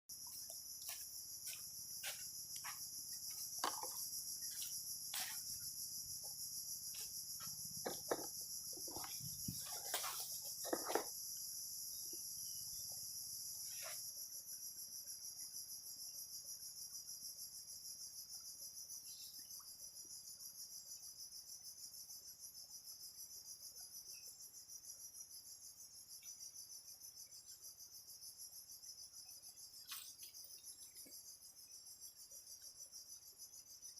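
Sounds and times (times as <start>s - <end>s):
insects chorus: 0.1s - 33.9s
sharp clicks and knocks: 7.8s - 9.7s.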